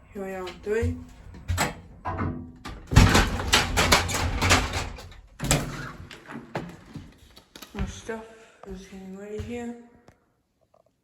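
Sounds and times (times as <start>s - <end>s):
elevator doors sliding open: 0.2s - 6.5s.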